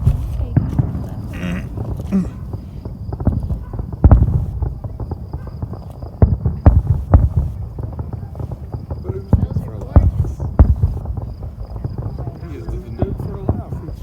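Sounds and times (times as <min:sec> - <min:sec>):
fireworks booming: 0:00.0 - 0:14.0.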